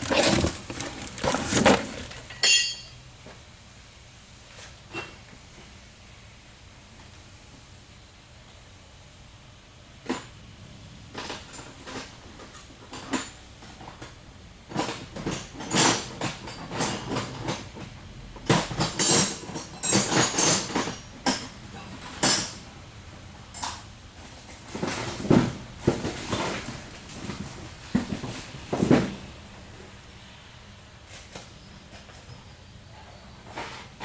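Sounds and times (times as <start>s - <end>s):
metal tools and parts clanking: 0.0s - 3.0s.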